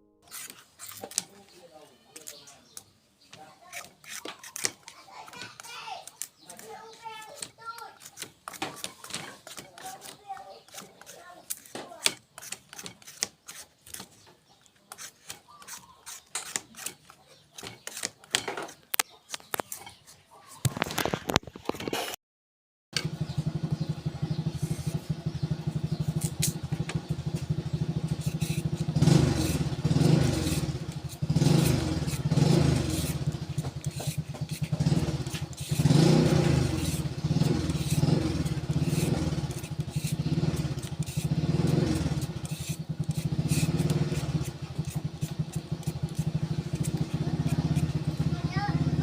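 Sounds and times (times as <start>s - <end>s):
small engine running: 23.0s - 49.0s.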